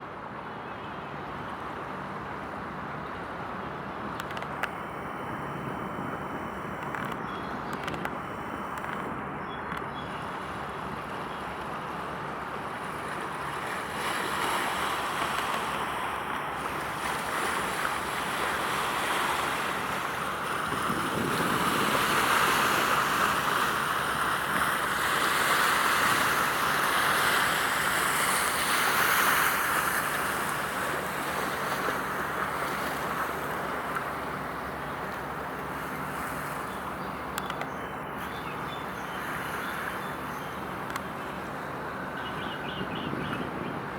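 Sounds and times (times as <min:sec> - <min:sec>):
sea water noise: 0:00.0 - 0:43.9
rushing wind: 0:20.6 - 0:22.4, 0:39.7 - 0:43.9.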